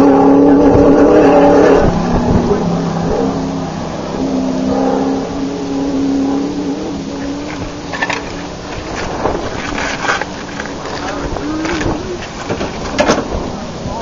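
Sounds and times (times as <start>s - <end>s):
indistinct voices: 0.0s - 9.4s, 10.2s - 14.0s
vehicle engine running: 0.0s - 14.0s
knocks and clatter: 7.5s - 13.5s.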